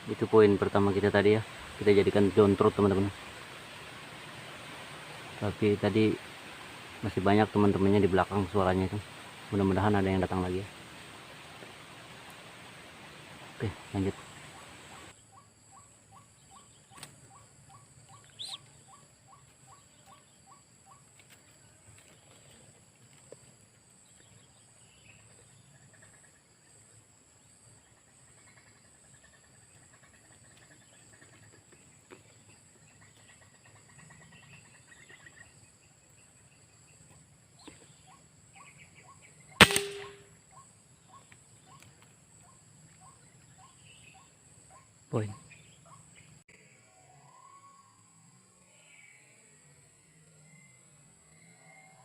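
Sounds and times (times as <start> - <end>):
waterhen calling rhythmically: 0.9 - 5.5, 10.6 - 15.2, 17.7 - 19.0
faint short bird calls: 13.6 - 21.0
air rifle shot: 39.6 - 40.3.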